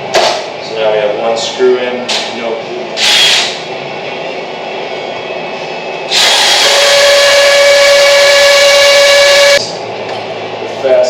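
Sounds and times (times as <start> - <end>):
power drill whining: 3.0 - 3.6, 6.1 - 9.6.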